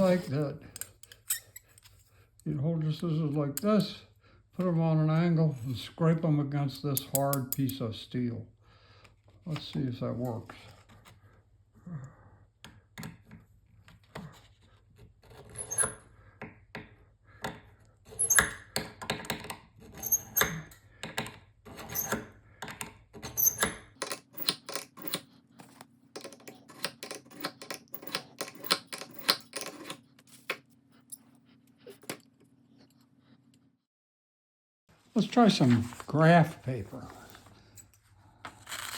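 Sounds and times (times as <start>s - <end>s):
scissor blade scraping on sharpener: 15.0s - 16.0s, 19.8s - 20.8s.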